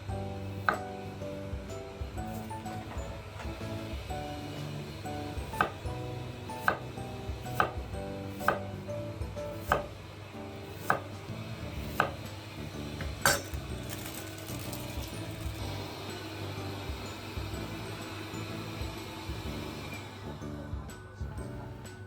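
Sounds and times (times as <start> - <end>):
soft background music: 0.0 - 22.0
knife chopping on cutting board: 0.6 - 1.0, 5.4 - 6.0, 6.6 - 8.8, 9.5 - 10.0, 10.7 - 11.2, 11.8 - 12.3.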